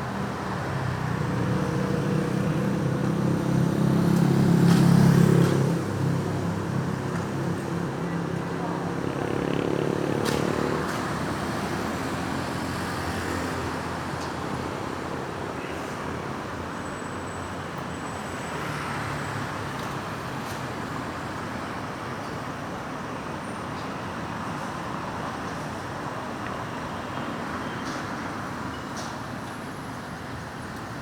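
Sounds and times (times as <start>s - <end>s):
road traffic passing: 0.0s - 23.4s.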